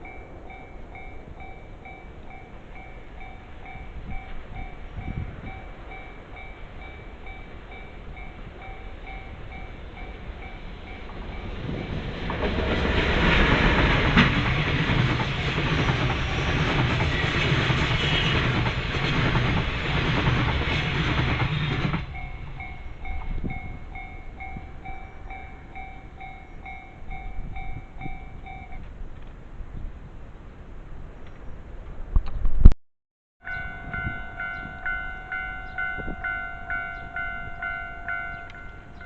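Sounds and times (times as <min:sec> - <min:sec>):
level crossing warning bell ringing: 0:00.0 - 0:12.0, 0:21.8 - 0:28.8, 0:33.4 - 0:39.0
train passing: 0:00.0 - 0:32.0, 0:33.4 - 0:39.0.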